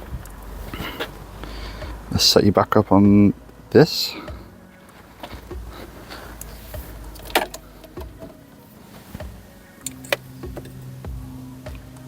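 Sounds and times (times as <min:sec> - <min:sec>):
low steady hum: 0:00.0 - 0:12.0
equipment clicks and knocks: 0:06.8 - 0:08.4.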